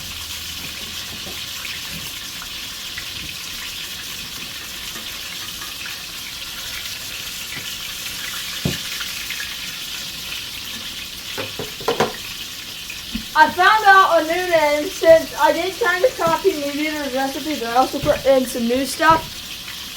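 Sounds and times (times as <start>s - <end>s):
meat frying in hot oil: 0.0s - 19.9s
knock: 8.6s - 8.8s, 11.4s - 12.2s.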